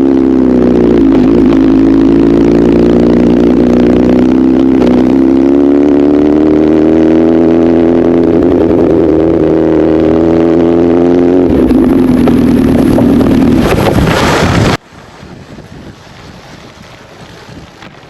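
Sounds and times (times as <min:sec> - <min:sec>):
motorcycle engine running: 0:00.0 - 0:14.8
wind rush: 0:11.3 - 0:18.0.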